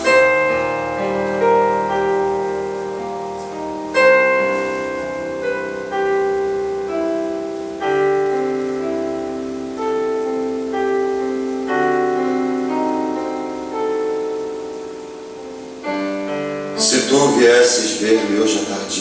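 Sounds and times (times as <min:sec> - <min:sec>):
solo piano chords: 0:00.0 - 0:19.0.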